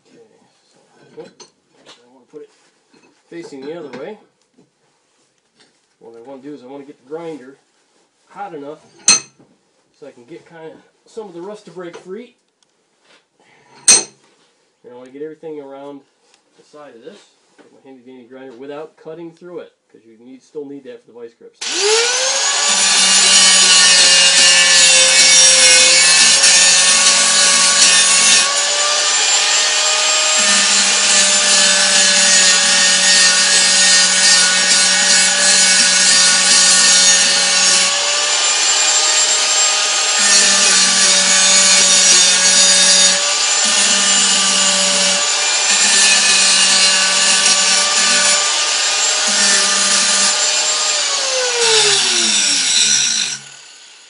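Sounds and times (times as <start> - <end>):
angle grinder grinding metal: 21.6 - 54.0.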